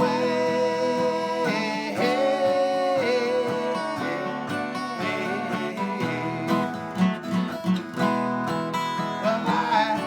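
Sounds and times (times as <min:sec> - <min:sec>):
person singing: 0:00.0 - 0:07.1, 0:09.2 - 0:10.0
acoustic guitar strumming: 0:00.0 - 0:10.0.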